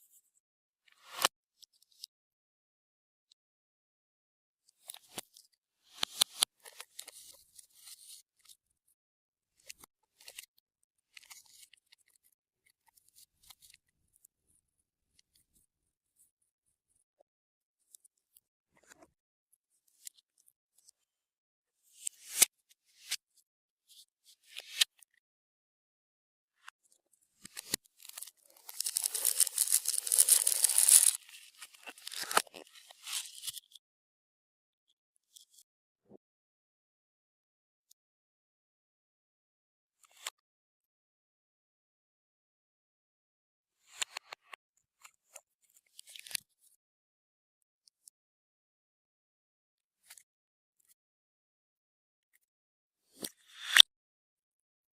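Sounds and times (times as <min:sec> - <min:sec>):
crinkling handling noise: 0:27.5 - 0:32.6.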